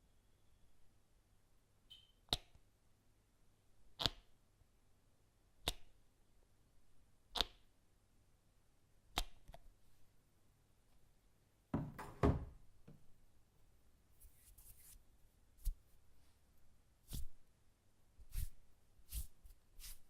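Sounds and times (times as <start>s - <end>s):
knocks on household objects: 11.8s - 12.6s.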